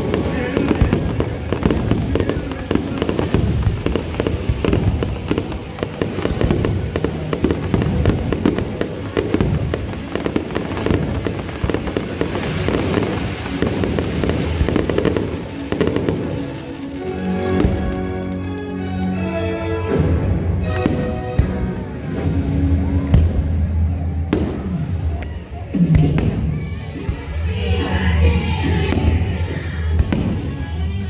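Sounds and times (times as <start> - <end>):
fireworks bangs and crackles: 0.0 - 18.7, 19.9 - 31.0
music playing: 0.0 - 31.0.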